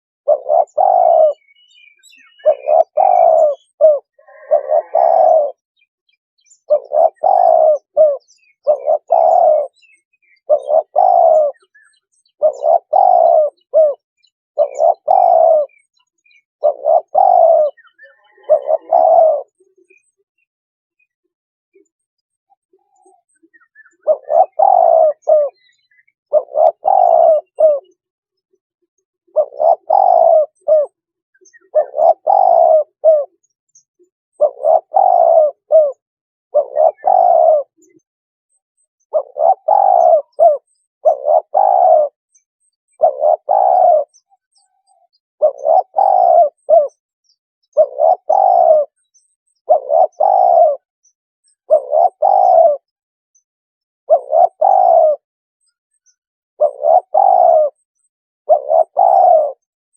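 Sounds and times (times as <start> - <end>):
dove cooing: 0.2 - 5.6, 6.6 - 14.0, 14.6 - 20.2, 22.6 - 28.0, 29.3 - 33.5, 34.3 - 38.0, 39.1 - 42.2, 42.9 - 47.0, 47.7 - 50.9, 51.6 - 52.9, 54.1 - 55.2, 56.6 - 57.9, 58.5 - 59.7.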